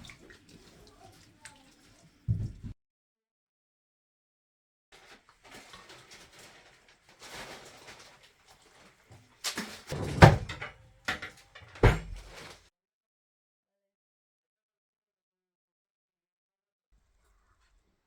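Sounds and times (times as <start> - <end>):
rustling handling noise: 5.0 - 12.7.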